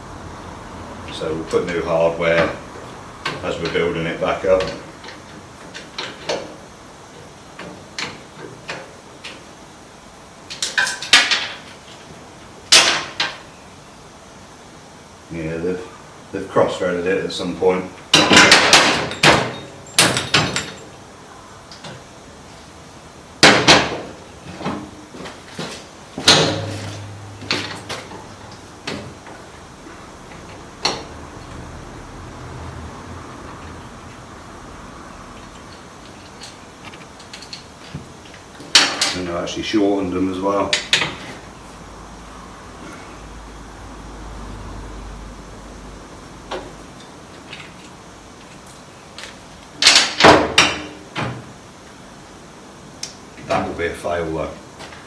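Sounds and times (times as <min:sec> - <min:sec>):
metal tools clanking: 0:10.5 - 0:11.7, 0:18.1 - 0:21.0, 0:26.2 - 0:28.6, 0:35.4 - 0:38.0
tools and parts clattering: 0:10.5 - 0:12.1, 0:18.1 - 0:21.0, 0:23.5 - 0:29.5, 0:35.3 - 0:39.2, 0:46.5 - 0:50.9.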